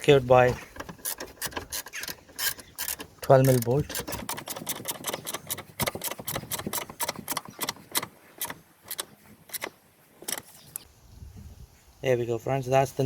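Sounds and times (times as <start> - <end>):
socket ratchet clicking: 0.8 - 10.9.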